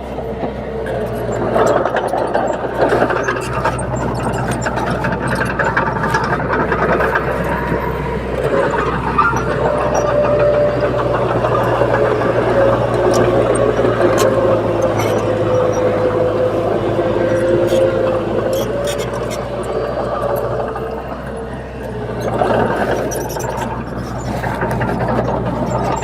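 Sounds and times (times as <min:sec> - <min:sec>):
bulldozer diesel engine running: 0:00.0 - 0:26.0
clicks and clatter: 0:00.4 - 0:26.0.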